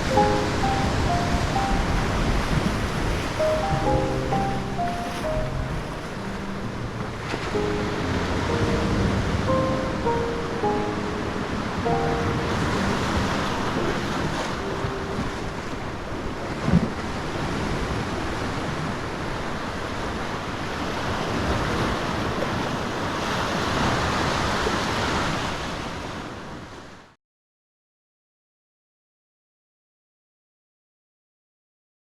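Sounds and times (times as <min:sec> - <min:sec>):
wind buffeting microphone: 0:00.0 - 0:26.4
ocean surf washing onto shore: 0:00.0 - 0:27.2.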